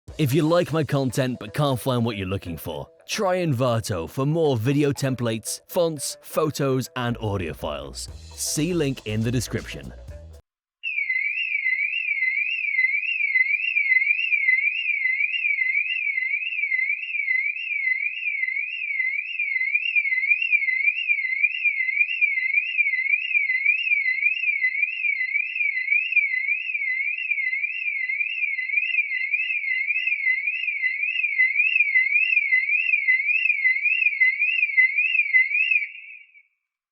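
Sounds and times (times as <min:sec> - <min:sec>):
car alarm siren: 0:10.8 - 0:36.6.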